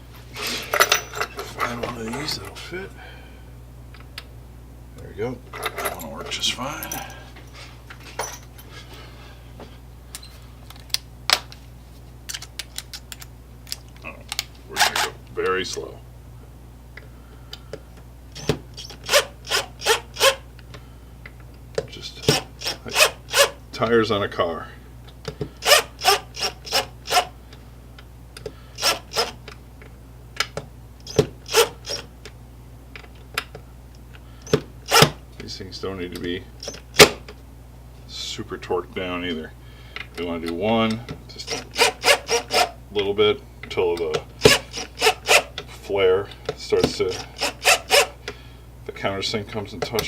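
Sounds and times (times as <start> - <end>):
screws squeaking into wood: 14.8 - 15.2, 18.4 - 20.4, 22.2 - 23.6, 25.6 - 27.3, 28.8 - 29.4, 31.0 - 32.1, 34.4 - 35.1, 41.4 - 42.8, 44.4 - 45.5, 47.1 - 48.2.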